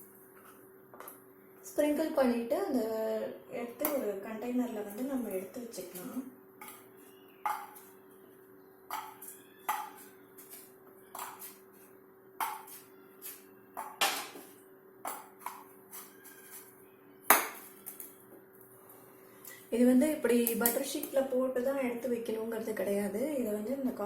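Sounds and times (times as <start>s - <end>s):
kitchenware clinking: 8.9s - 10.1s.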